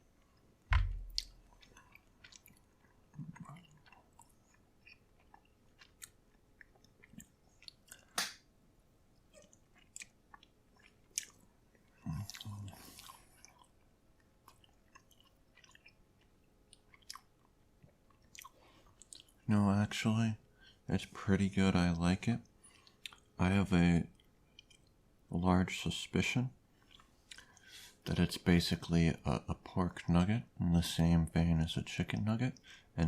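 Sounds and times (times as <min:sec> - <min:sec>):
person chewing food: 0:00.0 - 0:08.4, 0:09.1 - 0:19.5, 0:22.5 - 0:23.4, 0:24.1 - 0:25.0, 0:26.7 - 0:27.8
low thump: 0:00.7 - 0:01.2
small mouth clicks: 0:01.0 - 0:02.6.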